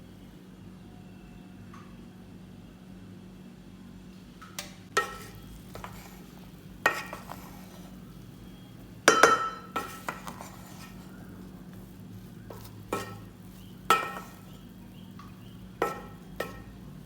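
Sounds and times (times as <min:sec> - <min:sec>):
steady low hum: 0:00.0 - 0:17.0
metal utensil clinking on pot: 0:05.0 - 0:07.9, 0:09.0 - 0:11.2, 0:12.5 - 0:16.9.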